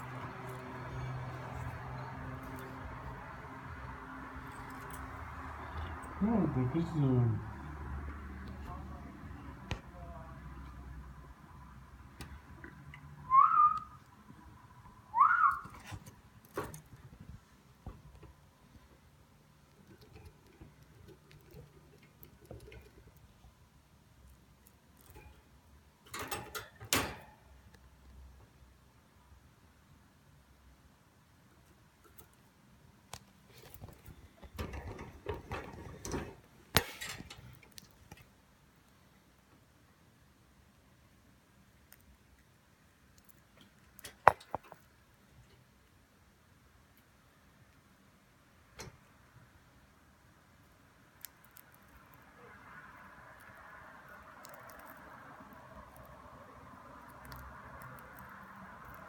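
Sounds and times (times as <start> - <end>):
short rising whistles: 13.2 - 14.0, 15.1 - 15.8
light rustling clatter and tapping: 33.2 - 38.3.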